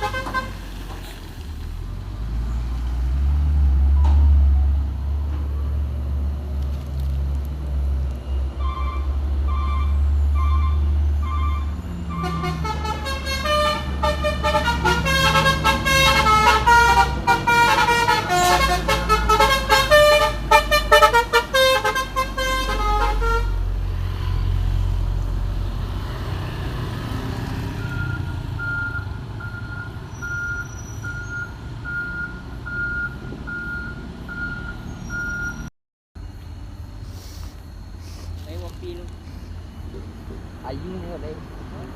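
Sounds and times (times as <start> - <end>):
multi-tone air horn tune: 0.0 - 0.6, 8.6 - 23.6
diesel engine rumble: 0.0 - 41.9
short beeps: 27.8 - 35.7.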